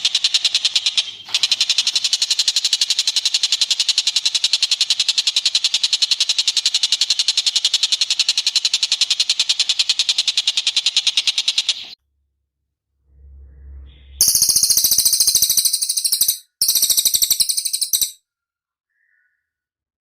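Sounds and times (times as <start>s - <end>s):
bird trill of high notes: 13.5s - 18.2s.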